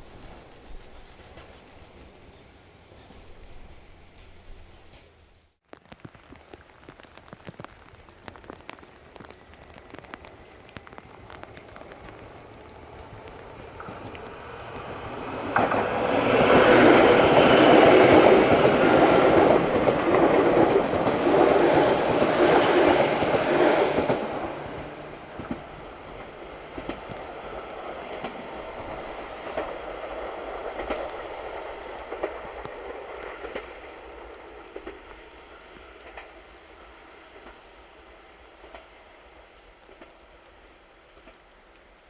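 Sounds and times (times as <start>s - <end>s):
electric train passing: 0.0s - 5.3s, 9.4s - 41.9s.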